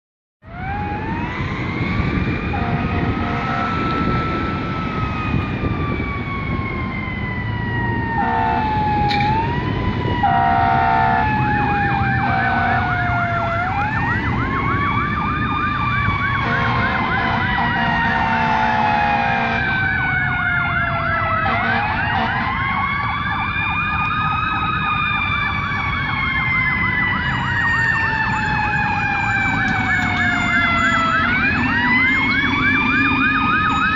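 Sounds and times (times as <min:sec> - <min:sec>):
fire truck siren wailing: 0:00.4 - 0:33.9
truck engine rumble: 0:00.4 - 0:33.9
siren fast warbling yelp: 0:00.5 - 0:33.9
air horn blasts: 0:02.5 - 0:04.3, 0:08.2 - 0:09.3, 0:10.2 - 0:11.4, 0:12.2 - 0:12.9, 0:16.4 - 0:19.8, 0:21.4 - 0:22.5.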